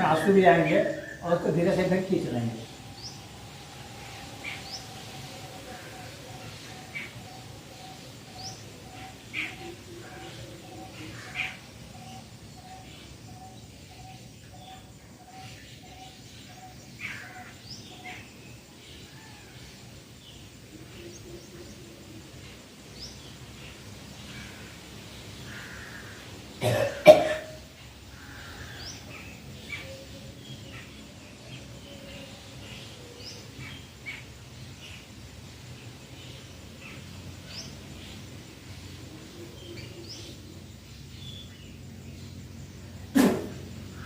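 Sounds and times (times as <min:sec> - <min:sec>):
faint birds chirping: 0:00.0 - 0:44.0
man coughing: 0:26.6 - 0:27.5, 0:43.2 - 0:43.6.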